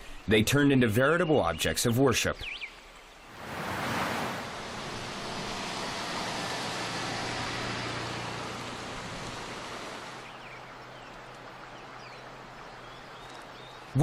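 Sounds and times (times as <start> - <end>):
steady outdoor rushing noise: 3.3 - 10.4.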